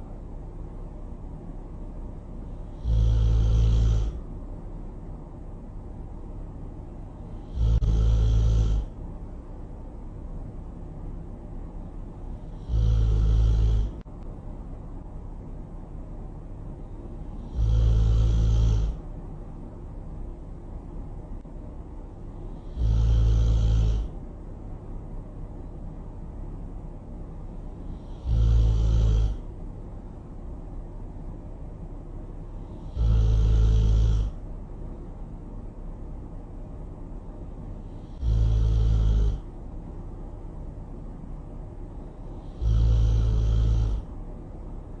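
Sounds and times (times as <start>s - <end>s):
faint low rumble: 0.0s - 45.0s
person snoring: 2.5s - 4.2s, 7.2s - 9.0s, 12.2s - 14.0s, 17.2s - 19.0s, 22.4s - 24.2s, 27.7s - 29.5s, 32.5s - 34.4s, 37.8s - 39.5s, 42.0s - 44.1s.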